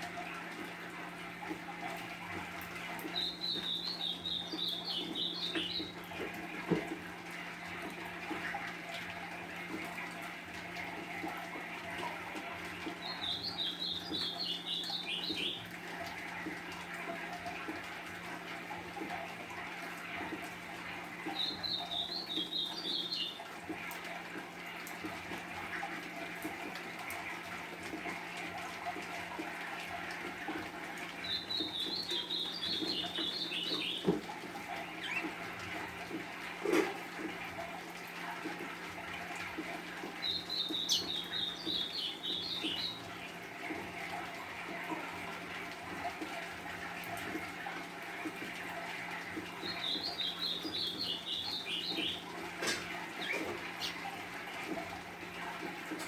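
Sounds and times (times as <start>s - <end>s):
bird singing warbled phrases: 3.0s - 6.0s, 12.8s - 15.7s, 21.3s - 23.4s, 31.2s - 34.1s, 40.2s - 43.0s, 49.6s - 52.3s.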